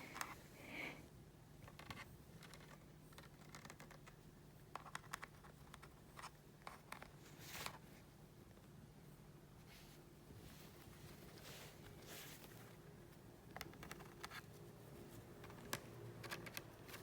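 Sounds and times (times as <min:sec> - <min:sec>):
laptop keys clicking: 0:01.7 - 0:04.2, 0:04.8 - 0:07.1, 0:13.5 - 0:14.4.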